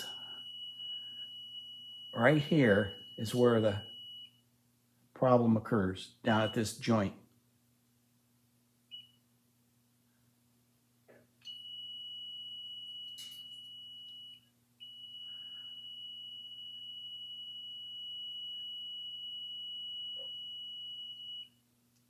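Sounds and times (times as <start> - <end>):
continuity tester beep: 0.0 - 4.3, 11.5 - 21.5
faint clicks of wires: 13.1 - 14.2.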